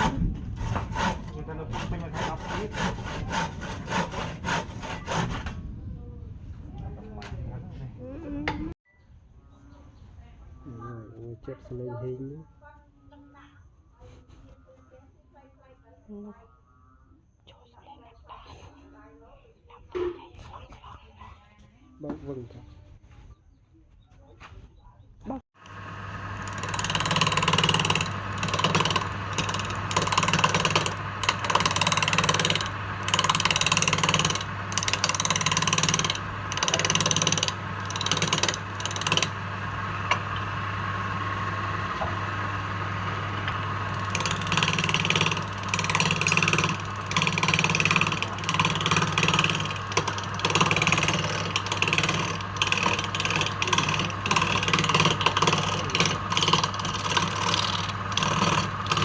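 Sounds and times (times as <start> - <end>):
tool rasping against spinning wood: 0.0 - 5.6, 25.9 - 59.0
lathe motor humming: 25.6 - 59.0.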